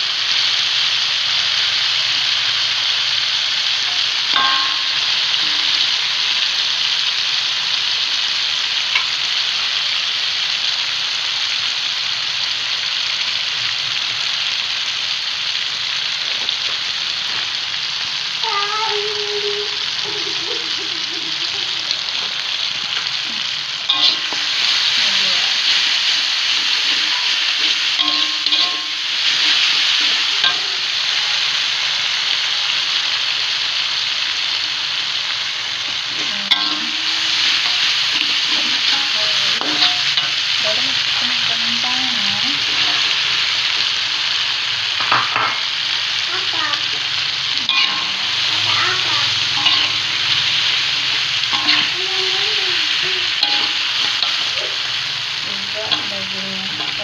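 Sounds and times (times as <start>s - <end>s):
paste sizzling in hot oil: 0.0s - 57.0s
spatula scraping pan: 23.9s - 30.9s, 36.1s - 41.8s.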